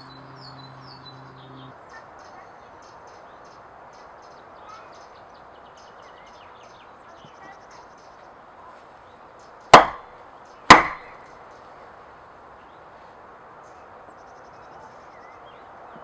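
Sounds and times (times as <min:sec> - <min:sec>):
faint birdsong: 0:00.0 - 0:16.0
hammer strikes: 0:09.7 - 0:10.1, 0:10.7 - 0:11.2.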